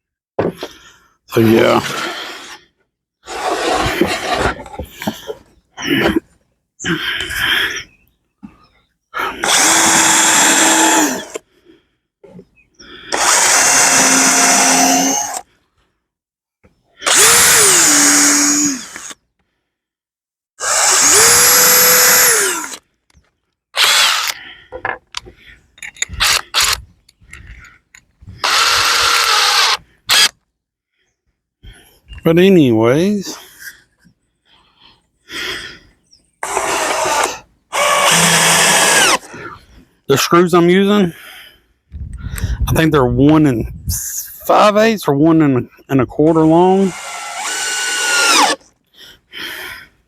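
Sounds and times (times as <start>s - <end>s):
power drill driving screws: 1.6s - 2.6s, 3.3s - 5.2s, 9.4s - 11.4s, 13.1s - 15.4s, 17.0s - 19.2s, 20.6s - 22.8s, 23.8s - 24.4s, 25.9s - 26.9s, 28.4s - 30.4s, 36.4s - 39.4s, 46.4s - 48.7s.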